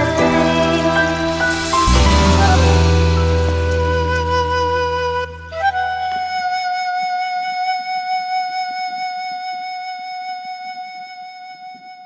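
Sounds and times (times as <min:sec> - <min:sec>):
long held high note: 0:00.0 - 0:08.5
instrumental backing music: 0:00.0 - 0:11.6.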